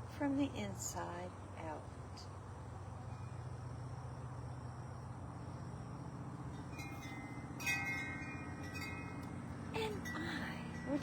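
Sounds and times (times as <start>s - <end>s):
insects chirping: 2.6s - 11.0s
low hum: 4.6s - 11.0s
ringing chime-like tones: 6.6s - 11.0s.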